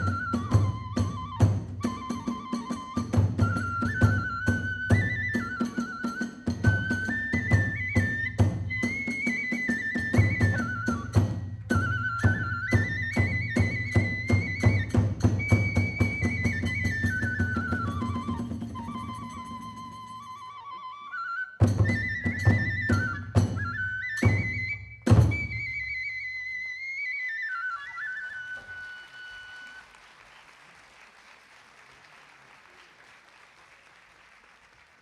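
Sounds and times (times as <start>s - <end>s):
drum beats: 0.0s - 20.2s, 21.6s - 26.0s
bamboo flute melody: 0.0s - 30.2s.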